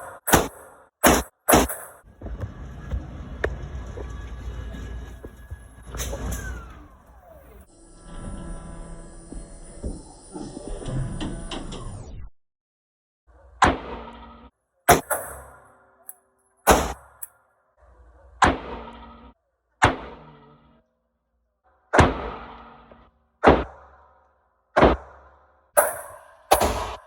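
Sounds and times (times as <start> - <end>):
gunshots: 0.0 - 2.3, 14.9 - 15.6, 16.7 - 17.1, 21.9 - 24.1, 24.8 - 27.0.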